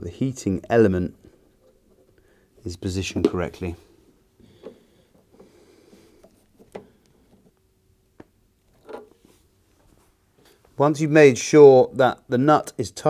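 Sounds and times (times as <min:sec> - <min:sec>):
faint metallic clicks and knocks: 0:06.2 - 0:07.6.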